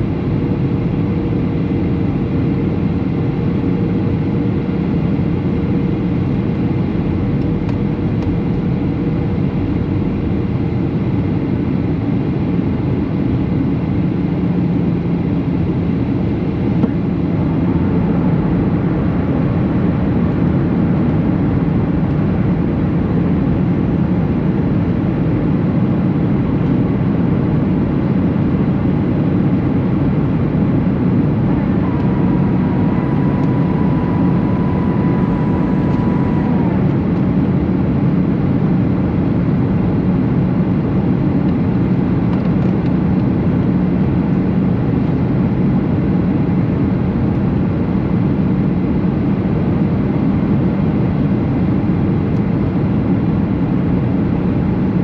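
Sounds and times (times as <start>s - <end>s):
aircraft cabin engine noise: 0.0s - 55.0s
steady high tone: 29.9s - 38.7s.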